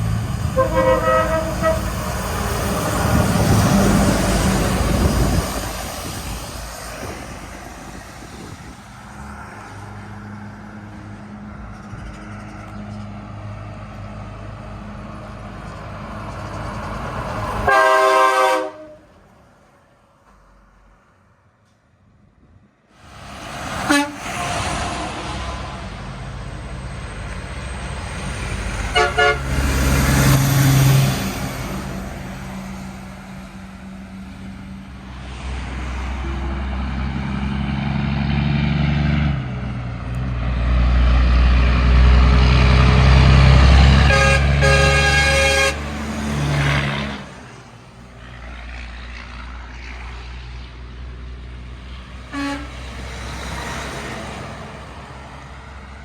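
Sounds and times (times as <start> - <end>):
locomotive rumble: 0.0 - 19.4, 22.4 - 56.0
train horn: 0.4 - 2.1, 17.7 - 19.2, 23.8 - 24.4, 28.9 - 29.8, 44.0 - 46.0, 52.3 - 52.9.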